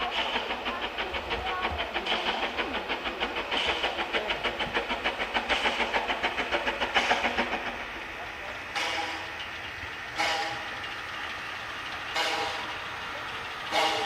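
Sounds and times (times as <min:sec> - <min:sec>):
steam locomotive chuffing: 0:00.0 - 0:14.0.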